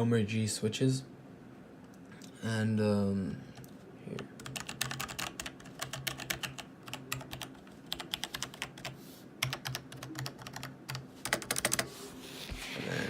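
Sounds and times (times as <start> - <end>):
mechanical keyboard clacking: 4.2 - 11.8.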